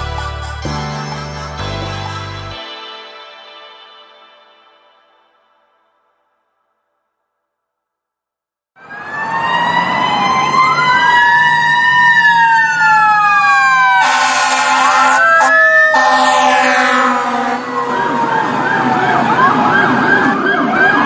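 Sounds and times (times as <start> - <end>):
emergency vehicle sirens wailing: 8.8 - 21.0
harsh blaring horn tone: 13.9 - 20.3.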